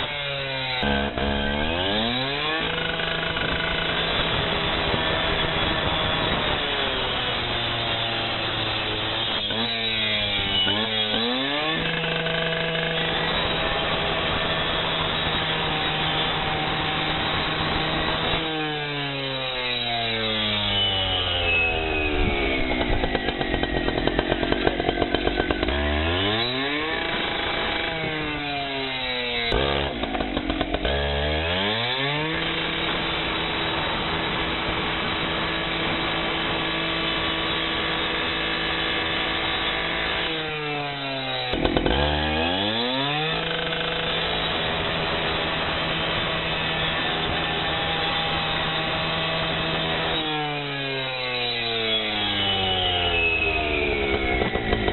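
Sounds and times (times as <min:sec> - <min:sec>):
cut-off saw cutting glass: 0:00.0 - 0:54.9.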